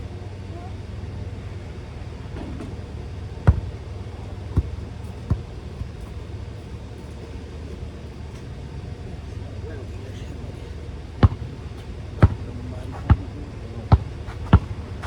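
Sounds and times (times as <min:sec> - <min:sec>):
steady low rumble: 0:00.0 - 0:15.0
basketball bouncing: 0:02.4 - 0:06.7, 0:11.2 - 0:15.0.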